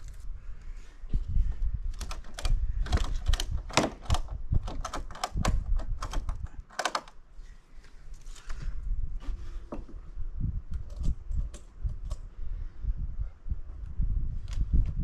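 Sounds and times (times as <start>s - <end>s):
sharp clicks of strapping lumber: 1.9s - 7.2s.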